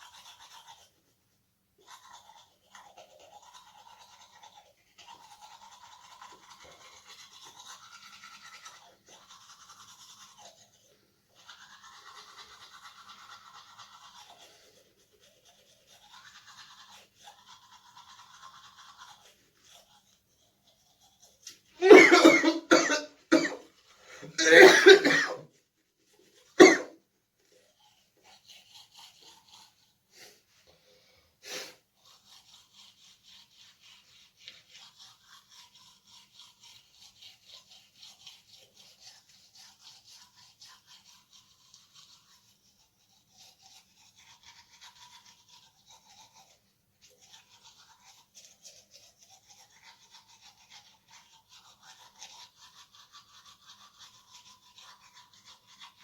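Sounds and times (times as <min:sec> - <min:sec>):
toothbrush scrubbing teeth: 0:00.0 - 0:56.0
man coughing hard: 0:21.8 - 0:23.6, 0:24.3 - 0:25.4, 0:26.6 - 0:26.9.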